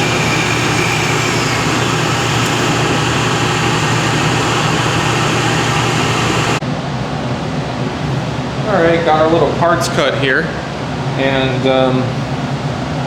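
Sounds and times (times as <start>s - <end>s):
metal lathe cutting: 0.0s - 6.6s.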